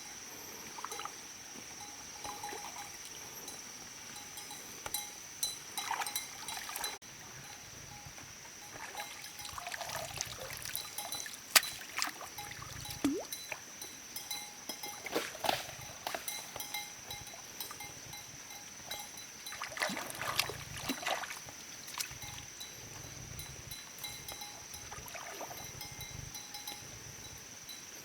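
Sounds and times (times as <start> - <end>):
water trickling and splashing: 0.3 - 7.6, 8.5 - 26.6.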